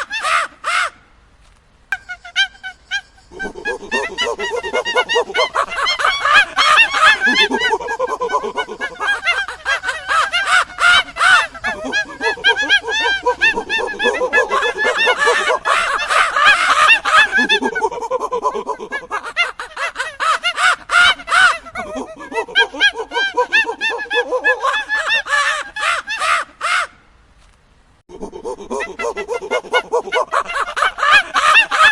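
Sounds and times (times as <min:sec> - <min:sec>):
monkeys chattering and screeching: 0:00.0 - 0:00.9, 0:02.0 - 0:26.9, 0:28.1 - 0:31.9.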